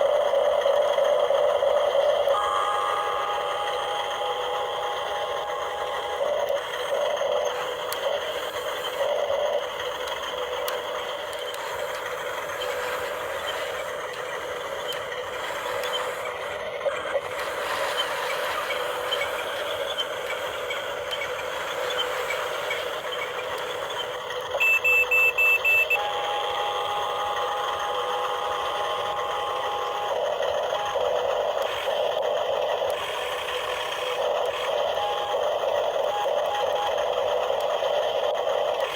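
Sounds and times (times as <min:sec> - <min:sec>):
toy electric motors whining: 0:00.0 - 0:38.9
electronic beeps: 0:24.6 - 0:26.0.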